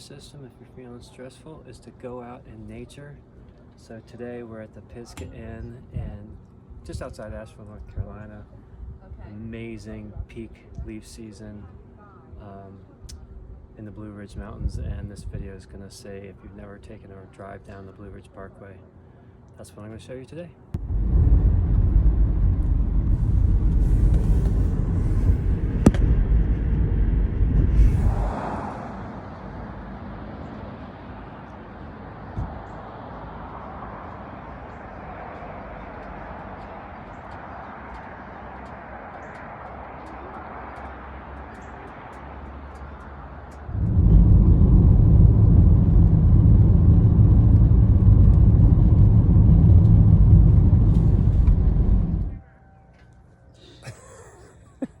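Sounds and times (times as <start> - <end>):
road and wind noise: 0.0 - 53.6
car driving rumble: 20.8 - 52.4
car road hiss: 23.1 - 26.0, 27.6 - 30.2.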